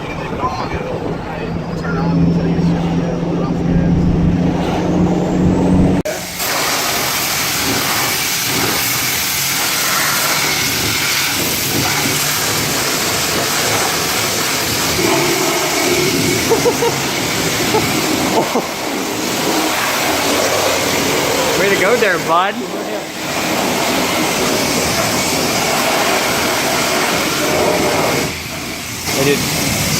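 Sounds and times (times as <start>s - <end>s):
pressure washer spraying water: 6.1s - 29.9s.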